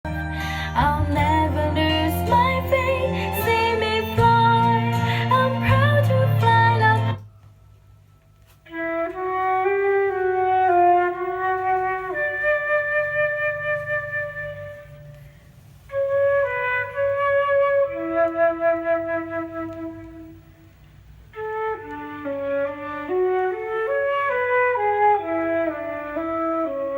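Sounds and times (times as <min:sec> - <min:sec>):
solo wind instrument melody: 0:08.1 - 0:20.7, 0:21.3 - 0:26.9.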